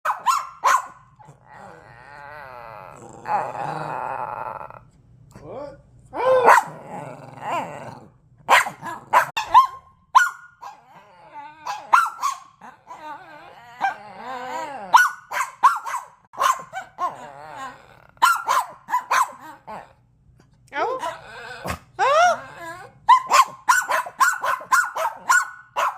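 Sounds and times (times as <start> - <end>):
dog barking: 0.0 - 1.1, 6.4 - 6.8, 8.5 - 10.8, 11.6 - 12.6, 14.9 - 17.1, 18.2 - 19.4, 23.1 - 25.9
dog whining and growling: 1.2 - 8.2, 10.6 - 15.1, 16.7 - 18.6, 19.3 - 20.1, 20.8 - 23.4.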